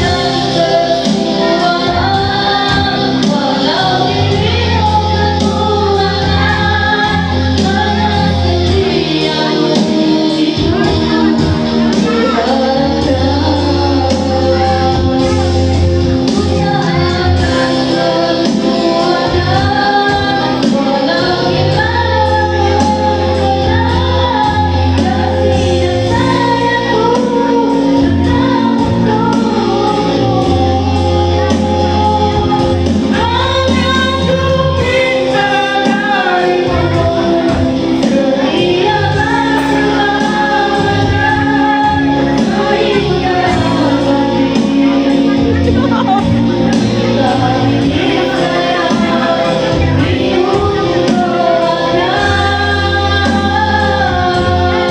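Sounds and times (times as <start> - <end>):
steady beat and bass line: 0.0 - 54.9
woman singing: 0.0 - 54.9.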